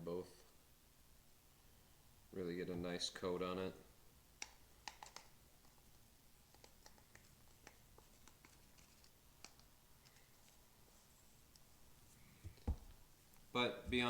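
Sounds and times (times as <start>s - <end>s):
screwdriver clicks and taps: 4.4s - 5.3s.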